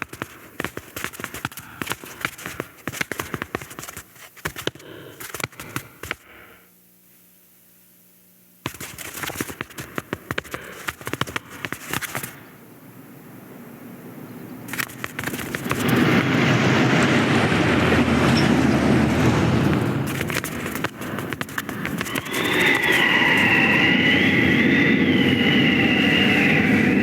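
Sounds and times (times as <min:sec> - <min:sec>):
faint hum: 0:00.0 - 0:27.0
burning fuse sizzling and crackling: 0:19.2 - 0:24.9.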